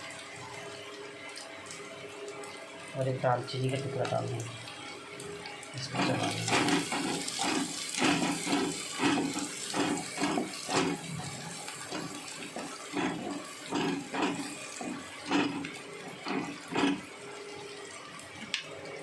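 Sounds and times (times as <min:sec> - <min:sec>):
masala sizzling in oil: 0:00.0 - 0:19.0
spatula scraping pan: 0:06.0 - 0:17.1.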